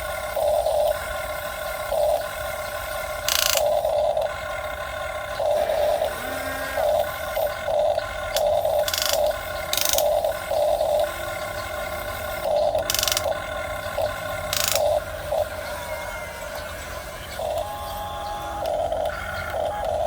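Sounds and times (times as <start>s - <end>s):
small electric motors whirring: 0.0s - 20.0s.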